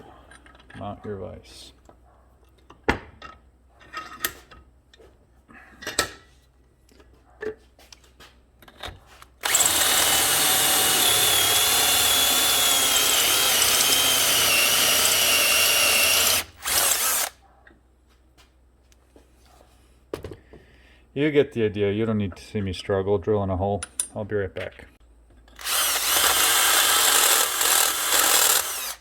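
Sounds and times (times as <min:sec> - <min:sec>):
electric drill drilling metal: 0:09.4 - 0:17.4, 0:25.6 - 0:29.0.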